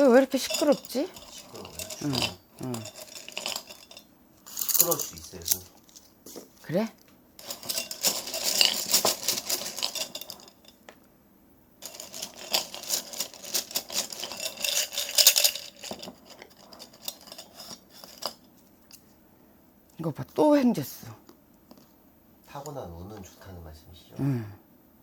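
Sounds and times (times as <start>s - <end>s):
small metal pieces rattling: 0.1s - 6.1s, 7.4s - 10.8s, 11.8s - 18.4s.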